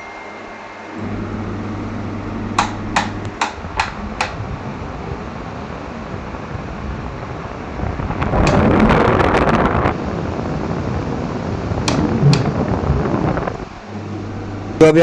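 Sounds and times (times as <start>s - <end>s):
air conditioner running hum: 0.0s - 15.0s
air conditioner louvre motor clacking: 2.2s - 4.8s, 8.2s - 9.7s, 11.7s - 15.0s.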